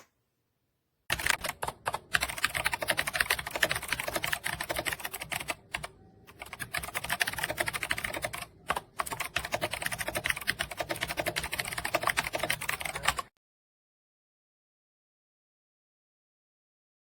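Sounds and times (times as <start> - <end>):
fast typing on mechanical keyboard: 1.1 - 13.3.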